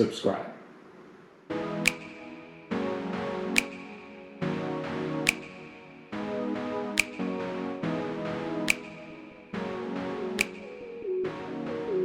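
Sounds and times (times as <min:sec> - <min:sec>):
sustained synth chords: 0:01.5 - 0:12.0
sharp snap-like hit: 0:01.9 - 0:02.5, 0:03.6 - 0:04.3, 0:05.3 - 0:06.0, 0:07.0 - 0:07.4, 0:08.7 - 0:09.4, 0:10.4 - 0:10.8.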